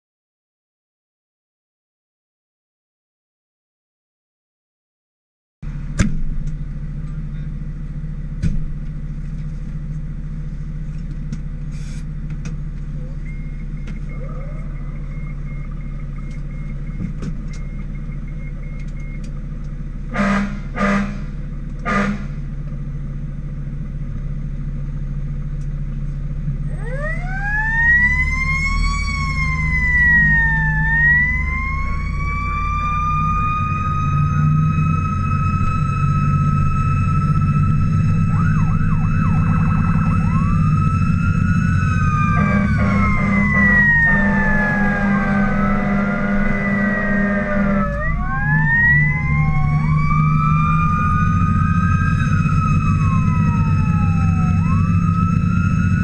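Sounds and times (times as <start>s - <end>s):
fire engine engine humming: 5.6s - 56.0s
siren wailing: 13.0s - 18.6s, 26.6s - 56.0s
horn blasts: 20.1s - 22.4s, 42.2s - 48.4s.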